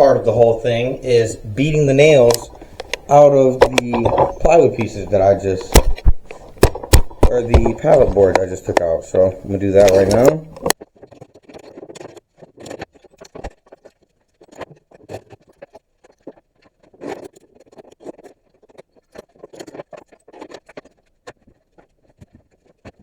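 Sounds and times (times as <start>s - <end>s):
scraping: 0.0s - 10.8s
knocks and taps on wood and metal: 5.7s - 8.9s.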